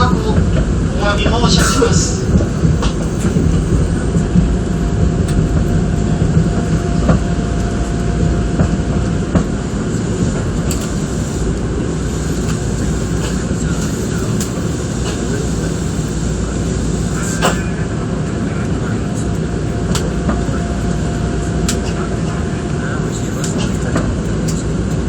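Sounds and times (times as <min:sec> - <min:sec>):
electric train rumble and hum: 0:00.0 - 0:25.0
thin steady whine: 0:00.0 - 0:25.0.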